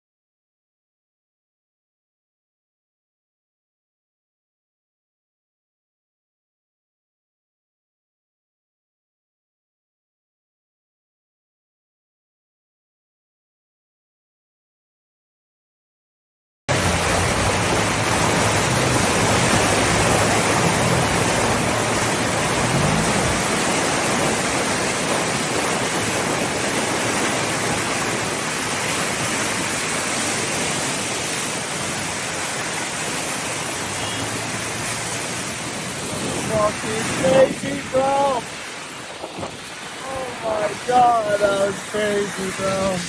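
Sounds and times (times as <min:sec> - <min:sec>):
rushing water: 0:16.7 - 0:43.0.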